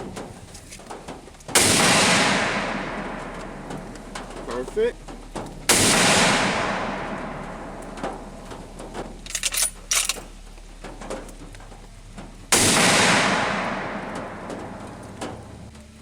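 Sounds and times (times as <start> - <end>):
sharp metallic clicks: 0.0 - 15.7
rifle shot echoing: 1.5 - 4.6, 5.7 - 10.2, 12.5 - 15.7.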